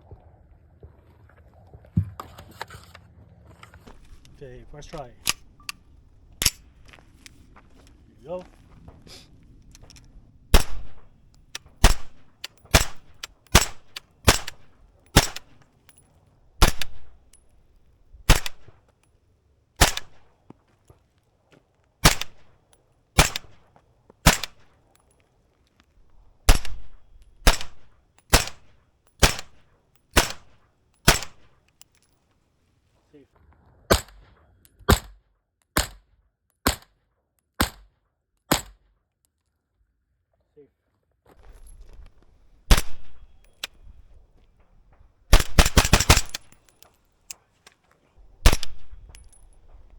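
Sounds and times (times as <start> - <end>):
suppressed rifle shots: 3.9 - 8.6, 9.7 - 15.6, 16.6 - 17.4, 18.2 - 18.8, 19.8 - 20.3, 22.0 - 22.5, 23.2 - 24.7, 26.1 - 31.5, 41.5 - 44.2, 45.3 - 46.7, 48.3 - 49.9.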